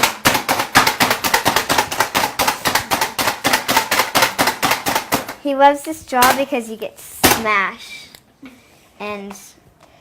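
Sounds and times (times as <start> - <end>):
food chopper clacking: 0.0 - 5.4.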